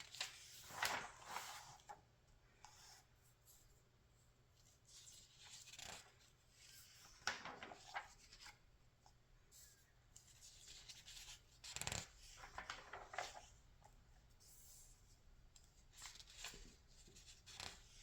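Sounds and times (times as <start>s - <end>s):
paper pages rustling: 0.0s - 2.0s, 5.1s - 8.6s, 10.2s - 13.6s.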